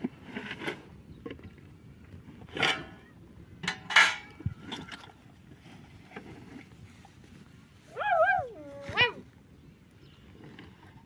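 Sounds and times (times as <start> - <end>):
clinks and knocks of hard objects: 3.6 - 5.1.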